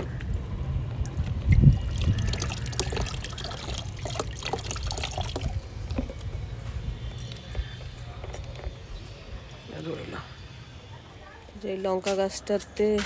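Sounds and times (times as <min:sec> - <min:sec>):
liquid trickling and pouring: 0:00.8 - 0:06.5.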